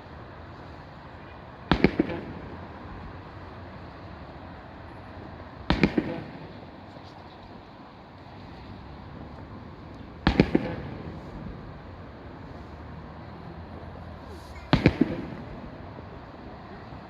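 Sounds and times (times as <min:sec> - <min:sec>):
fireworks bursting: 0:01.7 - 0:04.1, 0:04.7 - 0:07.2, 0:10.1 - 0:11.8, 0:14.2 - 0:17.0.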